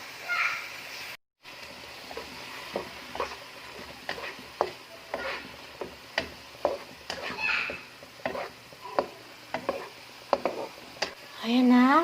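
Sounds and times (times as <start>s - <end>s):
meat sizzling in a pan: 0.0s - 12.0s
spoon scraping and knocking pan: 1.9s - 11.2s.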